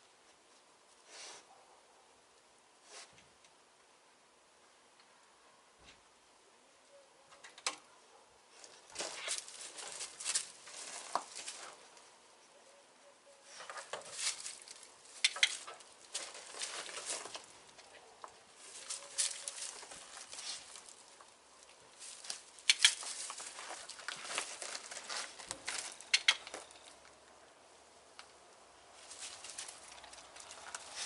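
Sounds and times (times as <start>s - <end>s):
crackly rustling and scratching: 7.2s - 12.7s, 13.3s - 31.0s.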